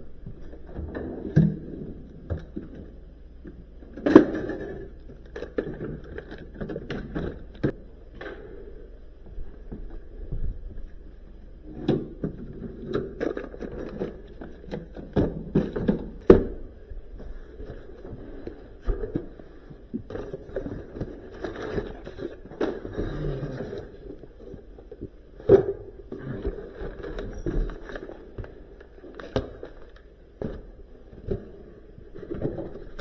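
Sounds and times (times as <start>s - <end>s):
objects knocking and scraping: 11.6s - 33.0s.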